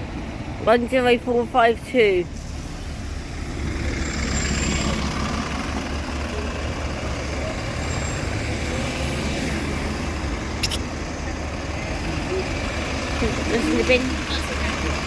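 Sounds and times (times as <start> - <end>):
bus diesel engine idling: 0.0 - 15.0
sharp click: 10.6 - 10.8.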